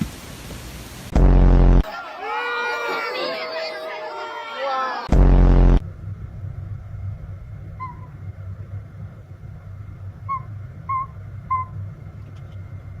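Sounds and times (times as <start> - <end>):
low steady rumble: 5.1 - 13.0
owl tooting: 7.8 - 8.1, 10.3 - 11.8.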